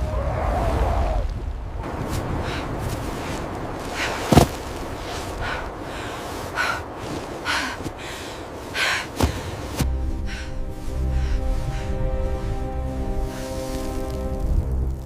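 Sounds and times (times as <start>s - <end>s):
low steady rumble: 1.2s - 15.0s
person breathing hard: 2.3s - 13.8s.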